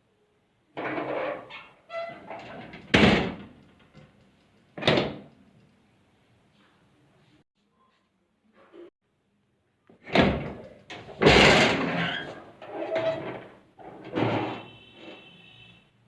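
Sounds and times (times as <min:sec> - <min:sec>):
metal cabinet doors banging: 0:00.8 - 0:03.6, 0:04.8 - 0:05.3, 0:10.1 - 0:14.7.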